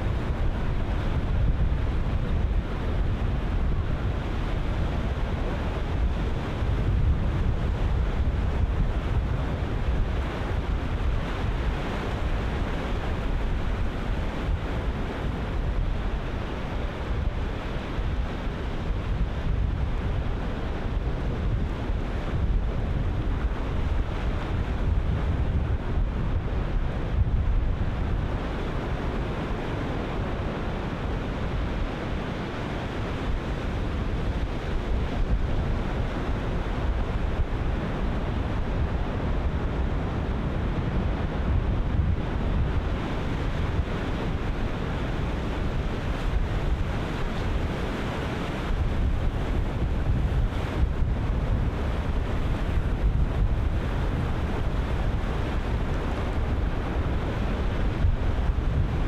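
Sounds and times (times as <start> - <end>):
wind buffeting microphone: 0.0 - 59.0.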